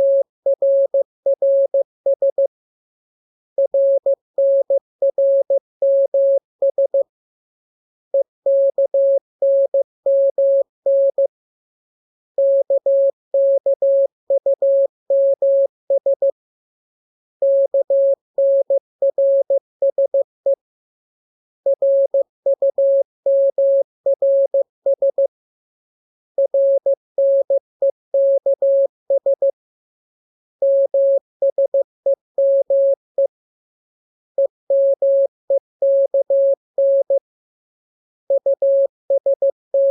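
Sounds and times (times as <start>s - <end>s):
morse code tone: 32.4s - 33.0s, 34.7s - 37.2s, 38.4s - 39.9s.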